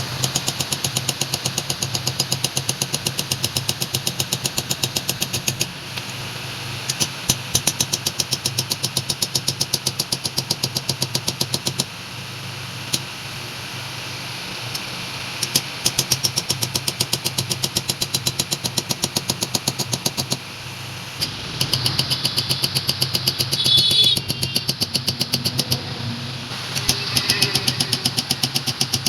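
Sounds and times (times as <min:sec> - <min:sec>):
power hammer motor hum: 0:21.0 - 0:25.9
hammer striking hot metal: 0:21.2 - 0:25.8, 0:26.5 - 0:29.0.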